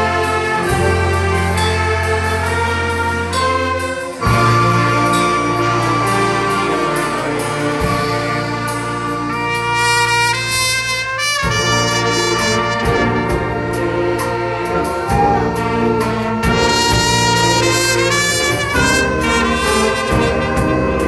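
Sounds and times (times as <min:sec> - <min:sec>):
orchestra with brass chords: 0:00.0 - 0:21.0.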